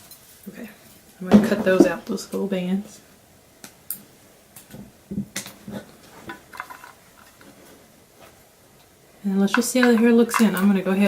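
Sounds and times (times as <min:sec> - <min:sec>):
light handling noise: 0:04.6 - 0:08.9.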